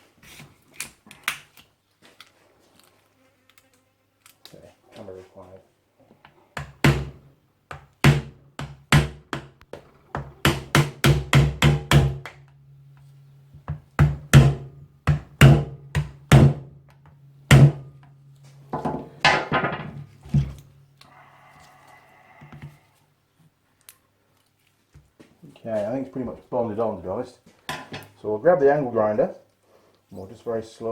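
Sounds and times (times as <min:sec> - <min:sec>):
low steady hum: 0:11.3 - 0:23.4.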